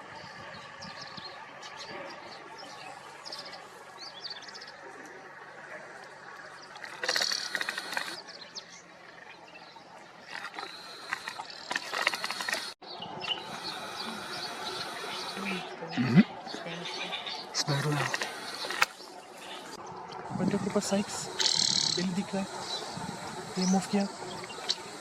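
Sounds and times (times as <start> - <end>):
low outdoor hiss: 0.0 - 25.0
rapid clicking: 10.4 - 12.8.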